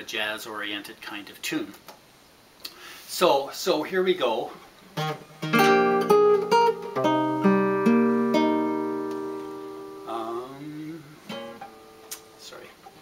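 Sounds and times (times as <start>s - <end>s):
guitar chords ringing: 5.0s - 12.5s.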